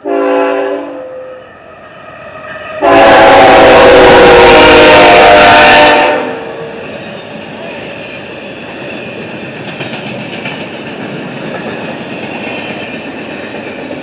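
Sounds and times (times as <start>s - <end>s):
locomotive air horn blast: 0.0s - 1.4s, 2.8s - 6.6s
train rumbling past: 0.0s - 14.0s.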